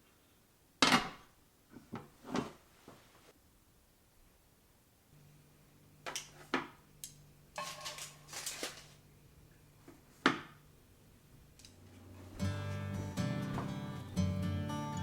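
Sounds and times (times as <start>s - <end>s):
faint steady hum: 2.8s - 12.5s
dishes knocking and clinking: 7.6s - 8.2s.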